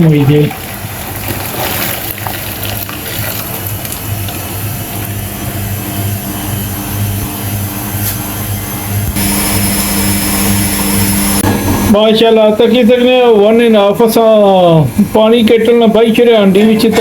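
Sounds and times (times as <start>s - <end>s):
washing machine running: 0.0s - 12.1s.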